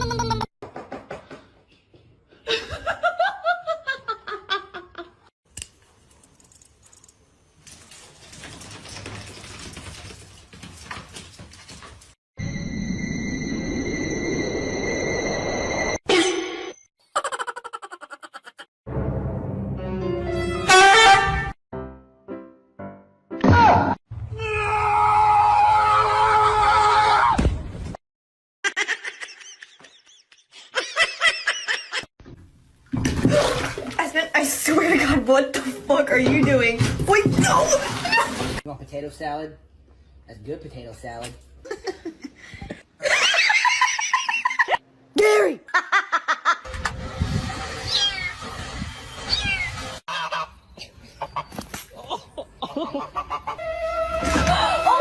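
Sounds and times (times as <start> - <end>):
high-pitched laughter: 0.0 - 0.5, 17.1 - 18.7
background noise: 28.9 - 46.6.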